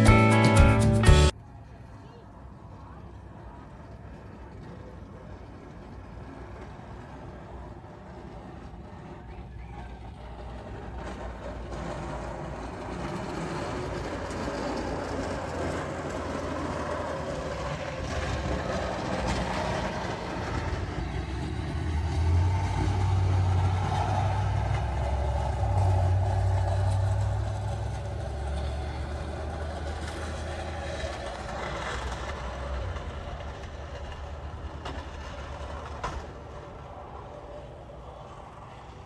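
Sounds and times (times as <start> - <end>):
vehicle engine humming: 0.0 - 1.4, 11.8 - 35.5.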